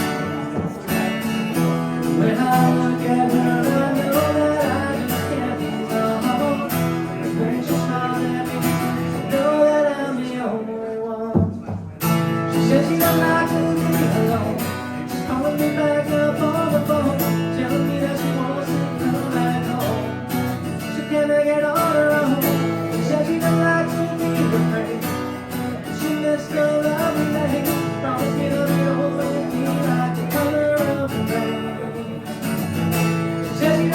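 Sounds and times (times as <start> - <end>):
person singing: 0.0 - 11.7, 12.5 - 32.5
acoustic guitar strumming: 0.0 - 33.9.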